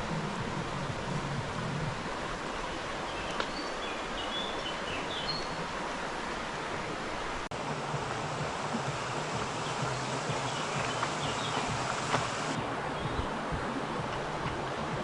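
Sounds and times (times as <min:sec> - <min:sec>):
river water rushing: 0:00.0 - 0:15.0
bird chirps: 0:03.1 - 0:05.6, 0:09.2 - 0:13.3.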